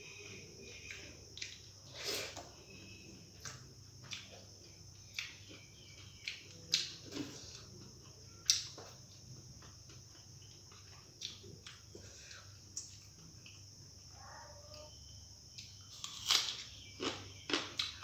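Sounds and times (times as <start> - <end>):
chewing and mouth smacks: 3.4 - 11.9.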